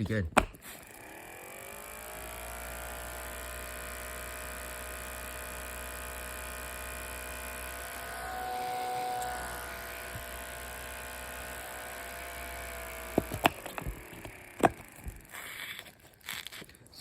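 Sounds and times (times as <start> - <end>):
siren spinning up: 7.8 - 15.5.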